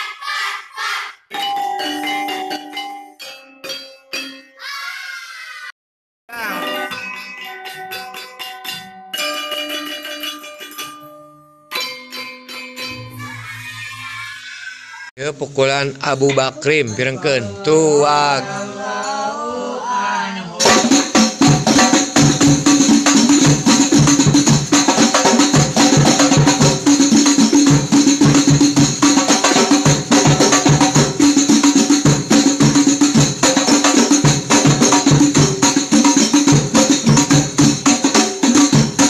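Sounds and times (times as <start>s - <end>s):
metallic percussion ringing: 6.4s - 13.7s
fast hand drumming: 20.6s - 39.0s.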